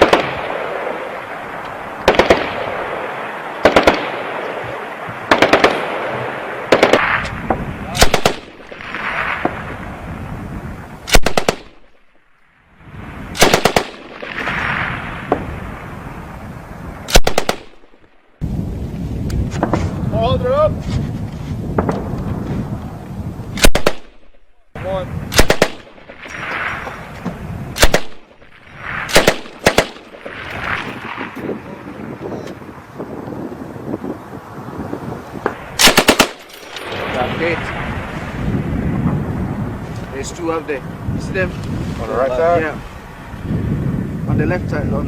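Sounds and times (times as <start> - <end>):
rolling gunfire echo: 0.0 - 10.4, 11.1 - 12.2, 13.0 - 16.2, 17.0 - 18.2, 23.6 - 31.4, 35.4 - 39.4
machine gun firing bursts: 2.1 - 2.6, 3.6 - 4.2, 5.3 - 5.9, 8.0 - 9.2, 13.4 - 14.5, 27.8 - 28.2, 29.1 - 30.3, 35.7 - 36.9
machine gun bursts: 35.8 - 36.9.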